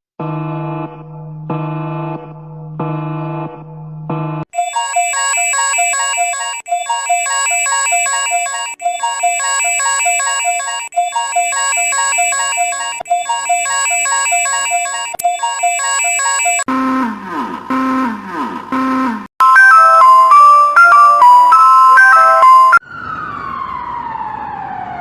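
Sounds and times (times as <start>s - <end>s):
electronic alarm melody: 4.5s - 16.8s, 18.8s - 22.8s.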